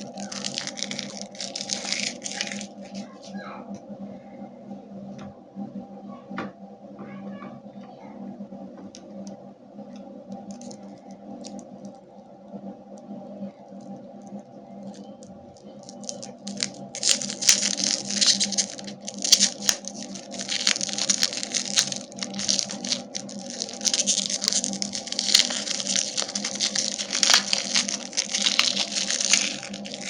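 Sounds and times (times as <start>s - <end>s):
candy wrappers crinkling: 0.0s - 3.1s, 10.4s - 11.9s, 14.8s - 30.0s
steady low hum: 0.0s - 30.0s.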